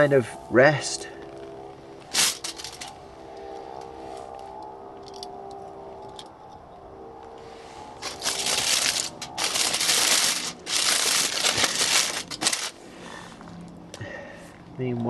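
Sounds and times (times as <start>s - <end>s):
tin foil crinkling: 2.1s - 2.9s, 8.0s - 12.8s.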